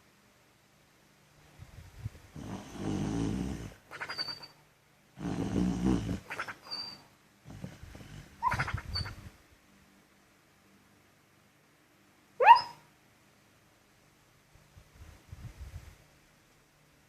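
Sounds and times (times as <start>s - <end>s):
dog snoring: 2.3s - 4.4s, 5.2s - 8.6s
muffled dog sleep barks: 2.3s - 4.5s, 5.2s - 9.2s, 12.4s - 12.9s.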